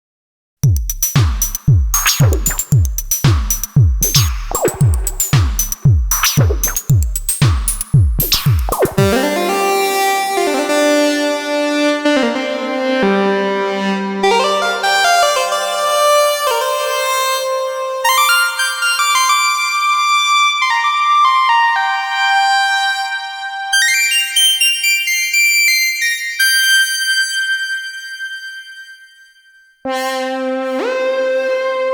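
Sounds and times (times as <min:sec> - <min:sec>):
deep kick drum hits: 0:00.6 - 0:09.2
held synth chords: 0:00.9 - 0:18.6.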